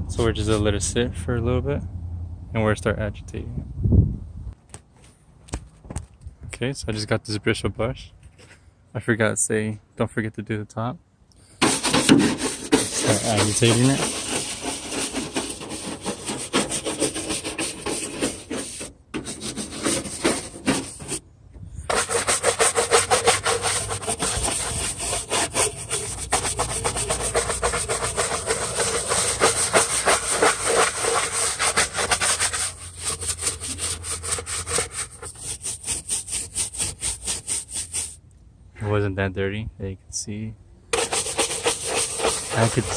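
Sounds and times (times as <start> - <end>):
stiff brush scrubbing: 11.6 - 21.2, 21.9 - 38.2, 40.9 - 42.9.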